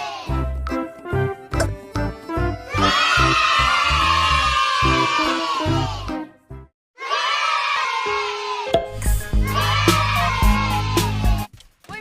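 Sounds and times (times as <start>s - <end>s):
children cheering and screaming: 2.6s - 6.1s, 7.0s - 8.7s, 9.3s - 11.5s.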